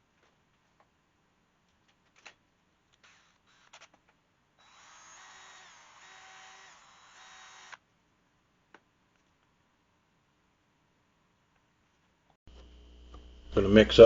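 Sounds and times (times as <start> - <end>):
small power drill whining: 3.0 - 3.9, 4.6 - 7.8.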